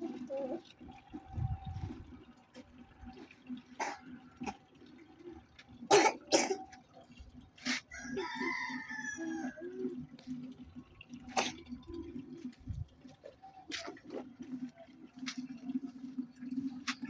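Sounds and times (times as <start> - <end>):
rooster crowing: 7.9 - 9.6.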